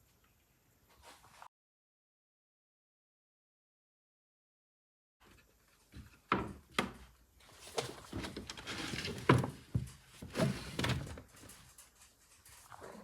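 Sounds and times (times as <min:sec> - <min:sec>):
rustling: 0:07.4 - 0:12.8.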